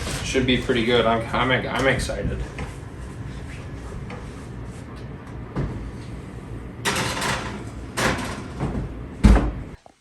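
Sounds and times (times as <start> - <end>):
oven rack scraping: 0.0 - 2.6, 6.8 - 8.8.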